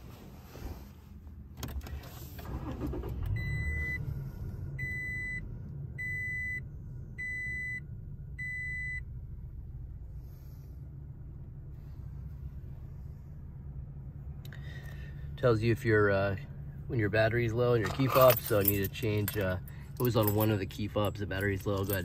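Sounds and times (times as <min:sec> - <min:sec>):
truck engine starting and idling: 0:01.3 - 0:22.0
dashboard warning chimes: 0:02.6 - 0:04.1, 0:04.8 - 0:09.1.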